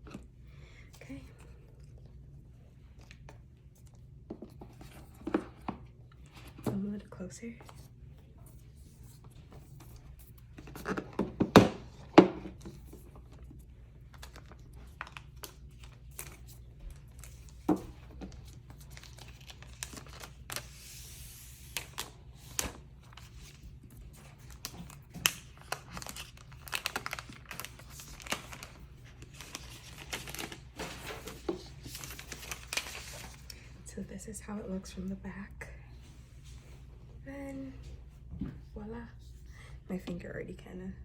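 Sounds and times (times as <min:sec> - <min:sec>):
wrap crinkling and tearing: 0:24.4 - 0:30.8.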